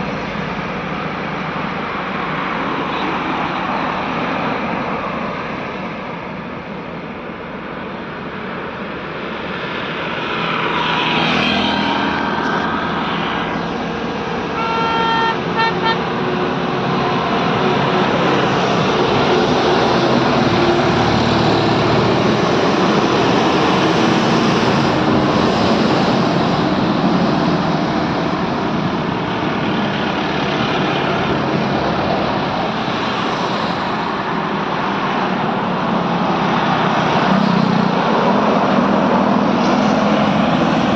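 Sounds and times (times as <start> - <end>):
heavy road traffic: 0.0 - 40.9
vehicle horn short toots: 14.6 - 16.0.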